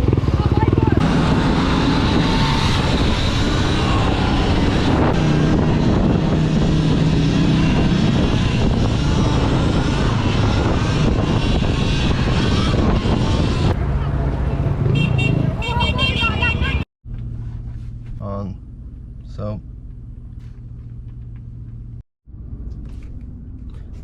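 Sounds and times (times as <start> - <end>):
wind rush: 0.0 - 15.6
road noise: 0.0 - 24.0.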